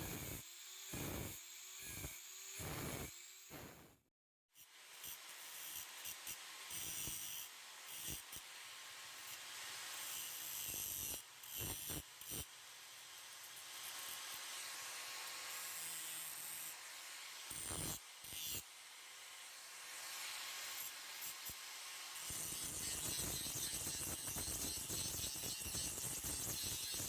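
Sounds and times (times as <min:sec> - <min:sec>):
abrasive tool scraping steel: 0:17.5 - 0:18.7, 0:22.2 - 0:27.0.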